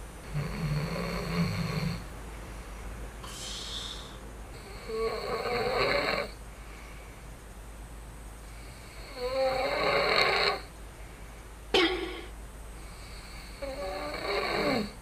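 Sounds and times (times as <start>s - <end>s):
man snoring: 0.2s - 2.0s, 3.3s - 6.4s, 8.6s - 10.7s, 12.8s - 15.0s
hissing breath: 2.5s - 4.3s.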